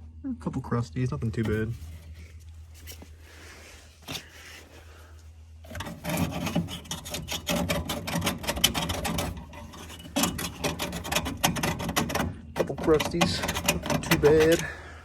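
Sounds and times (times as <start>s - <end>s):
scraping on metal: 5.6s - 15.0s.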